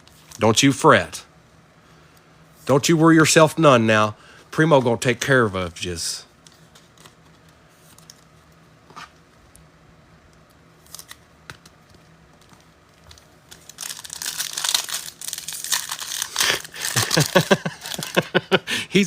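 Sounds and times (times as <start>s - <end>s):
wrapper crinkling and tearing: 10.8s - 11.2s, 13.1s - 18.2s.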